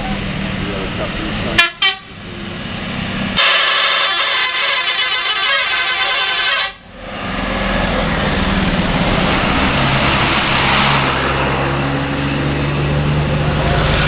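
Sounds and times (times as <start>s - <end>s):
bus engine running: 0.0s - 14.0s
traffic noise: 0.0s - 14.0s
bus horn multi-tone melody: 1.6s - 2.2s, 3.4s - 6.9s.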